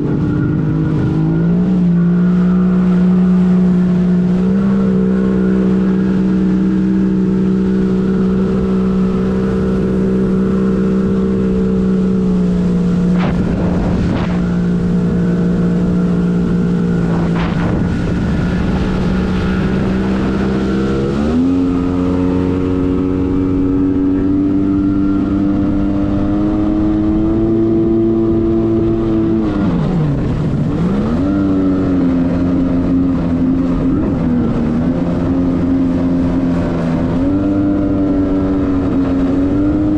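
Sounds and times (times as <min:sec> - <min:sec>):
watercraft two-stroke engine running: 0:00.0 - 0:39.9.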